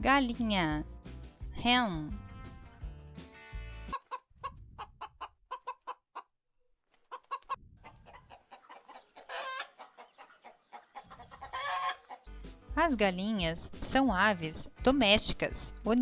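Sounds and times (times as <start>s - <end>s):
chickens clucking: 3.9s - 6.3s, 6.9s - 12.3s.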